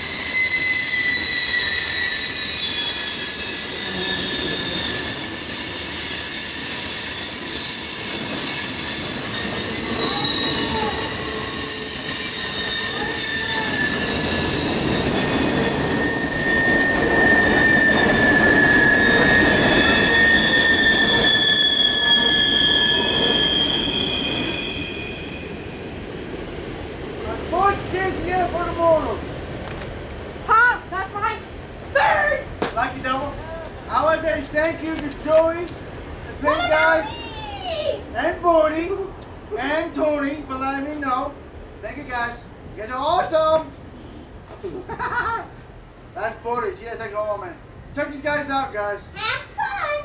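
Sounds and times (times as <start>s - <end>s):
train wheels squealing on rails: 0.0s - 26.8s
rumble of train cars: 0.0s - 50.0s.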